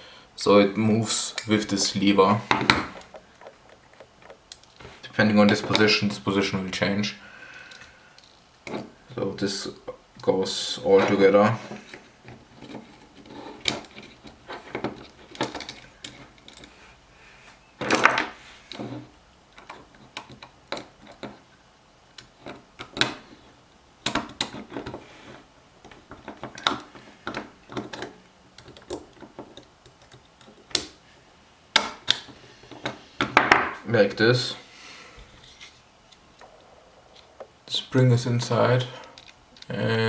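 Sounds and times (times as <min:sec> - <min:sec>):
small metal parts clicking: 0:03.0 - 0:04.9.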